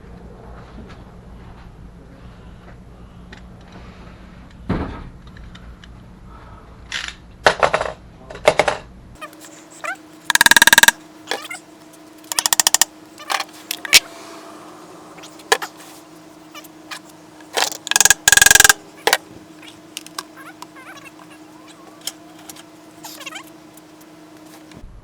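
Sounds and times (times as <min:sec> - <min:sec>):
low steady hum: 0:09.2 - 0:25.0
hand tools clicking and knocking: 0:10.2 - 0:11.5, 0:12.2 - 0:14.0, 0:15.4 - 0:15.8, 0:16.9 - 0:23.3
rattling taps: 0:10.3 - 0:11.5, 0:12.3 - 0:14.0, 0:17.4 - 0:19.2.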